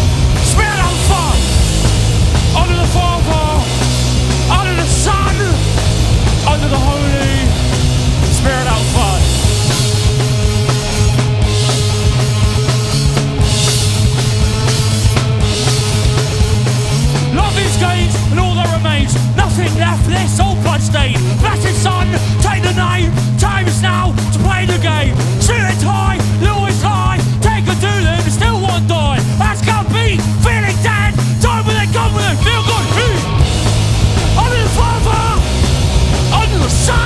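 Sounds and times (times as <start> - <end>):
sliding high notes: 0.0 - 17.8
heavy bass: 0.0 - 37.0
pounding drum kit: 0.0 - 37.0
rock band playing loudly: 0.0 - 37.0.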